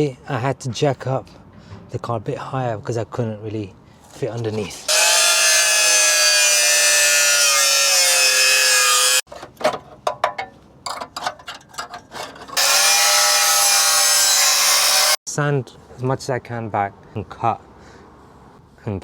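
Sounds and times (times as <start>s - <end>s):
angle grinder whining: 4.9s - 9.2s, 12.6s - 15.2s.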